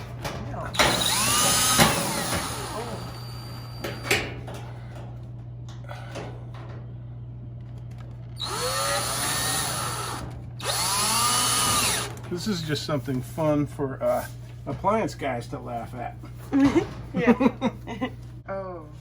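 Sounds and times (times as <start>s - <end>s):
power drill motor whine: 0.8s - 4.2s, 8.4s - 12.2s.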